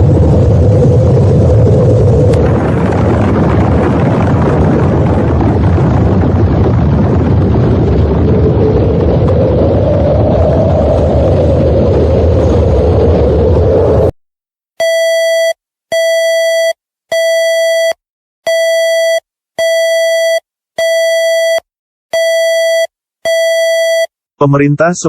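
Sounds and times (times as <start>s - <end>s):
loud rumbling drone: 0.0s - 14.1s.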